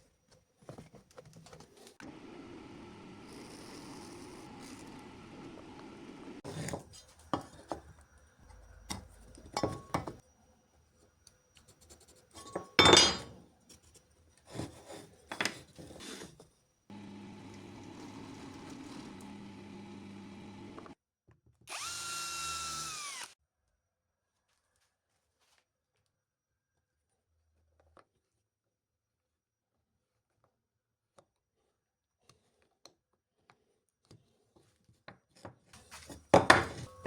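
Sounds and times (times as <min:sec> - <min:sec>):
machine hum: 0:02.0 - 0:06.4, 0:16.9 - 0:21.0
power drill motor spinning: 0:02.0 - 0:06.4, 0:16.9 - 0:21.0, 0:21.7 - 0:23.4
parts knocking and clattering: 0:08.9 - 0:10.2, 0:12.4 - 0:13.4, 0:35.9 - 0:37.0.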